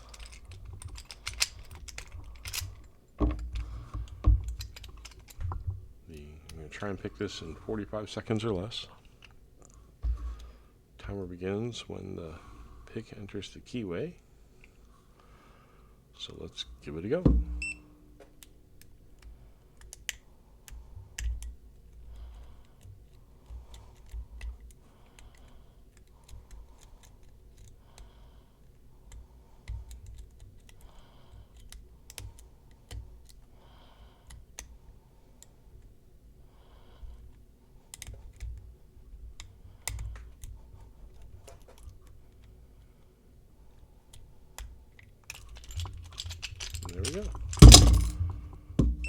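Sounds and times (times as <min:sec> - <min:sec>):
small metal clicks of lock picking: 0:00.0 - 0:05.6, 0:18.4 - 0:33.5, 0:34.2 - 0:34.8, 0:37.3 - 0:38.7, 0:39.3 - 0:42.6, 0:44.1 - 0:48.4
soft handling thumps: 0:10.0 - 0:10.4, 0:17.2 - 0:18.3, 0:46.7 - 0:49.0.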